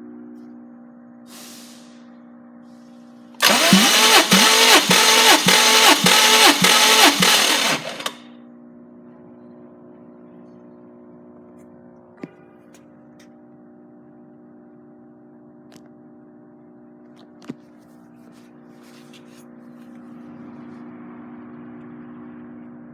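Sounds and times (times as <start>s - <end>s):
starter motor cranking engine: 3.4s - 8.2s.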